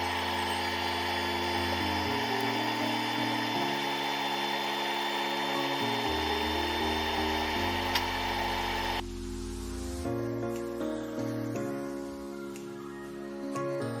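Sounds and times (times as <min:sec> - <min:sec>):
steady machine whir: 0:00.0 - 0:09.0
music of slow low notes: 0:00.0 - 0:14.0.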